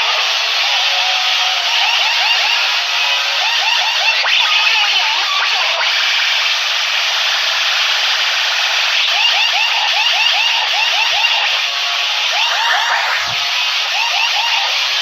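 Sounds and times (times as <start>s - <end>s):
loud sound systems blaring: 0.0s - 15.0s
rapid siren-like chirps: 1.7s - 2.8s, 3.4s - 4.6s, 8.9s - 15.0s.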